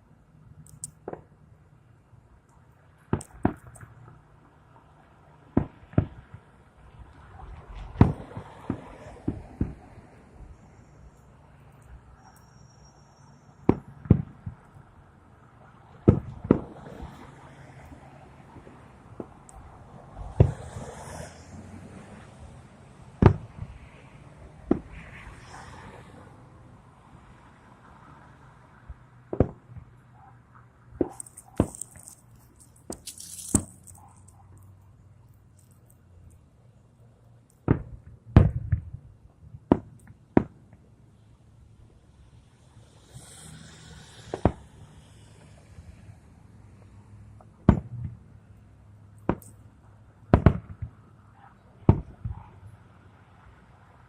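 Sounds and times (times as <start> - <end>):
fireworks crackling hiss: 31.0 - 34.8, 42.5 - 46.1
firework launch hissing: 42.6 - 45.5.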